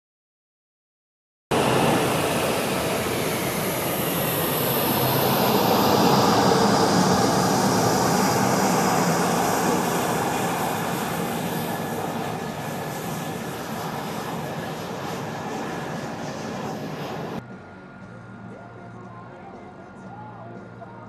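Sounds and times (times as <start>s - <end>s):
jet engine rushing: 1.5s - 17.8s.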